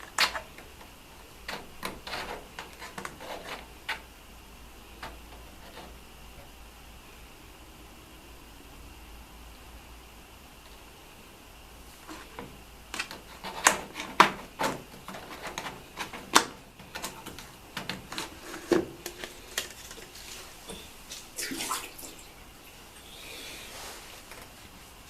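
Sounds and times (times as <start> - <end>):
water draining and splashing: 21.1 - 23.0.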